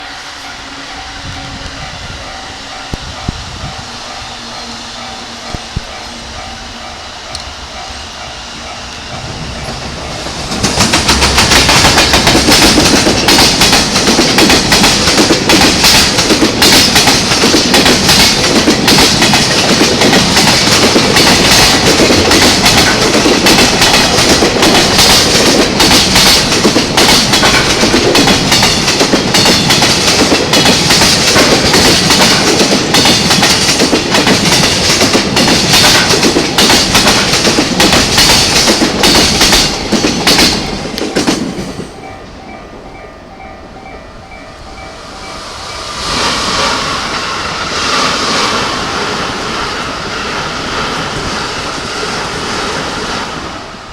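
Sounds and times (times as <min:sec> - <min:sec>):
freight train passing: 0:00.0 - 0:53.9
wheels clattering over rail joints: 0:09.1 - 0:41.9.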